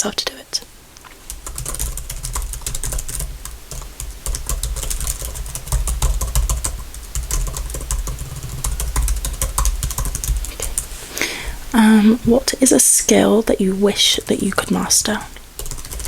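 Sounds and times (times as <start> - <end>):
fast keyboard typing: 1.3 - 10.9, 13.9 - 16.0.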